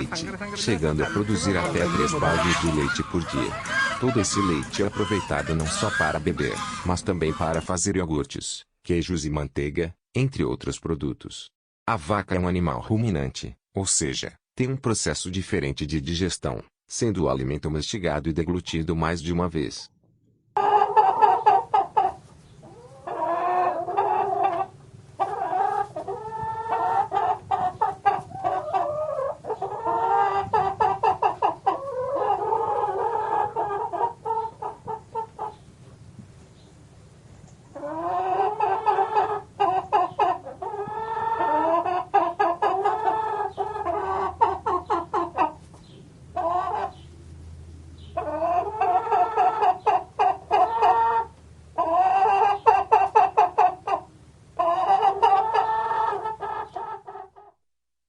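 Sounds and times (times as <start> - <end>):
chickens clucking: 0.0 - 7.7, 20.6 - 36.8, 37.5 - 57.6.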